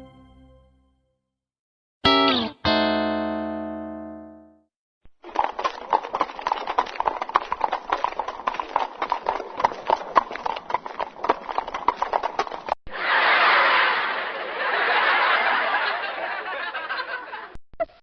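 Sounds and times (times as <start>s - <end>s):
horse hooves on hard surface: 5.1s - 12.8s
audience laughter: 12.9s - 17.6s.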